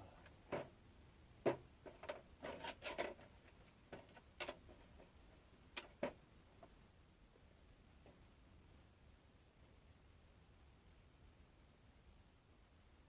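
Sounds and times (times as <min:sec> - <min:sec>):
faint clicks and light knocks: 0:01.4 - 0:06.8.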